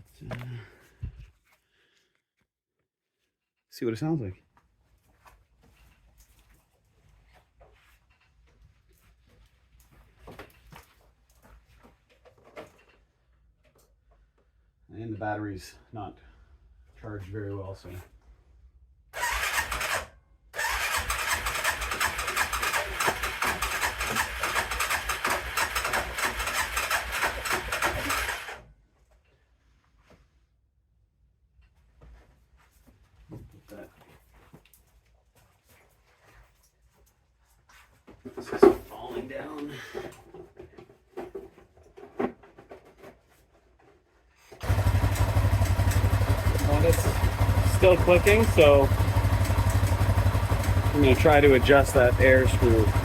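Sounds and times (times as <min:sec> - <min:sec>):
engine starting and idling: 0:19.2 - 0:28.6, 0:44.6 - 0:53.0
engine clicking at idle: 0:44.6 - 0:53.0.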